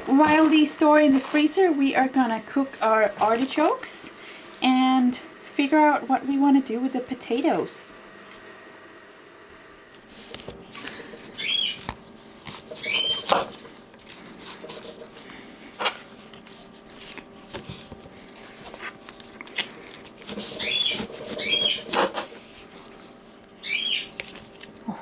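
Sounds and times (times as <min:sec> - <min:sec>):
faint steady hum: 0:00.0 - 0:25.0
short high chirping calls: 0:11.4 - 0:11.8, 0:23.6 - 0:24.1.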